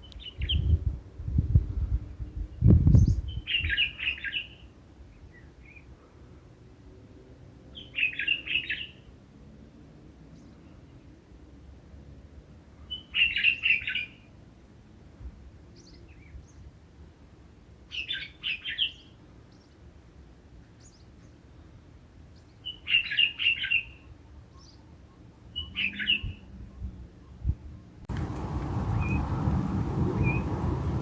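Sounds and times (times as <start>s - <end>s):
songbird chirping: 2.9s - 5.9s, 22.3s - 31.0s.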